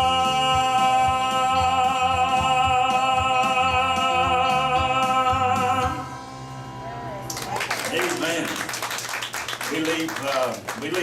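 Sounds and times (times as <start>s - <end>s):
person singing with vibrato: 0.0s - 6.4s
rhythmic instrumental accompaniment: 0.0s - 11.0s.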